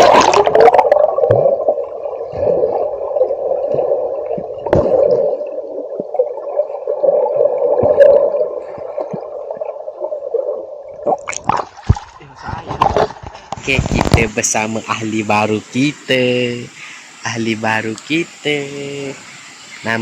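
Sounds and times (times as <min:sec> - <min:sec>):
rushing river water: 0:13.6 - 0:20.0.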